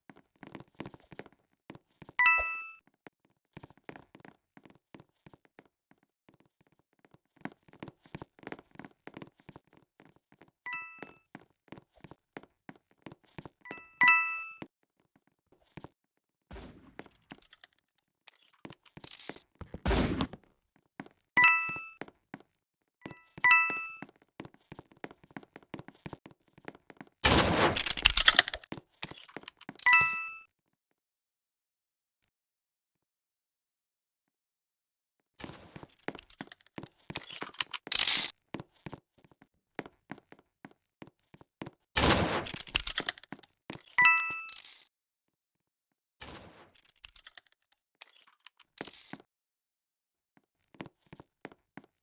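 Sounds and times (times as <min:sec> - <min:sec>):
ringing ding: 0:02.2 - 0:02.8, 0:44.0 - 0:44.6.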